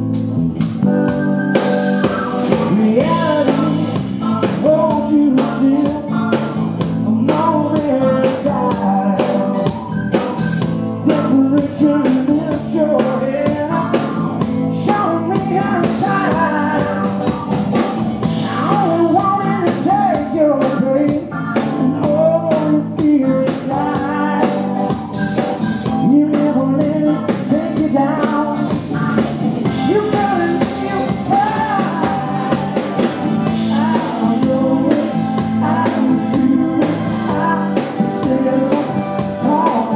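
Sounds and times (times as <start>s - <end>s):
drum kit: 0.0s - 39.9s
electric guitar: 0.0s - 39.9s
person singing: 1.6s - 17.5s, 18.2s - 39.9s.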